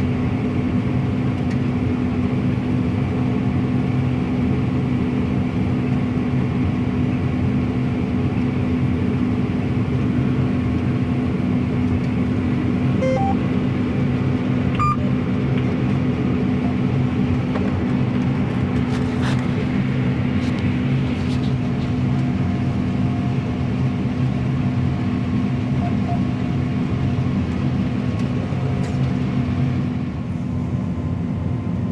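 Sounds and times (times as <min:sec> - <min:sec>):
combine harvester drone: 0:00.0 - 0:31.9
short electronic beeps: 0:13.0 - 0:13.4, 0:14.8 - 0:15.1.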